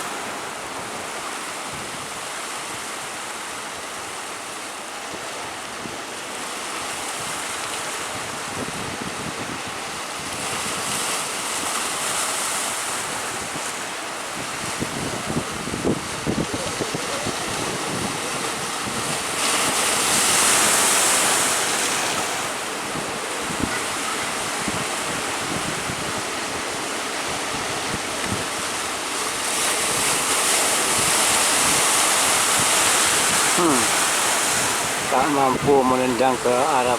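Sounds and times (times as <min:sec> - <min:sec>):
sea surf breaking: 0:00.0 - 0:36.9
wind buffeting microphone: 0:06.9 - 0:36.4.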